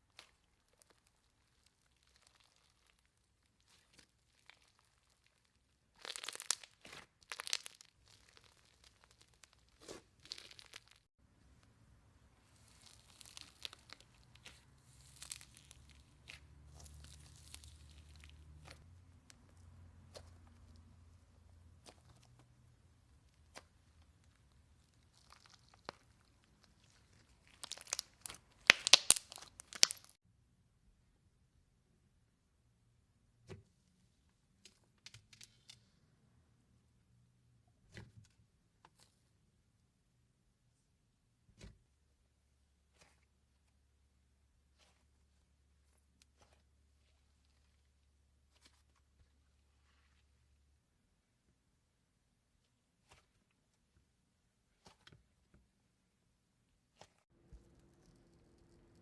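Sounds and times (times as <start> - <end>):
slime crackling when squeezed: 0.1 - 11.1, 12.4 - 18.8, 23.4 - 30.2.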